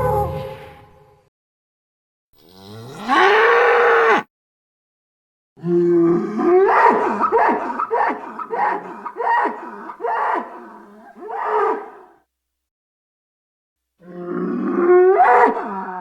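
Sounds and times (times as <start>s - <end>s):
pitched animal-like calls: 6.6s - 12.1s.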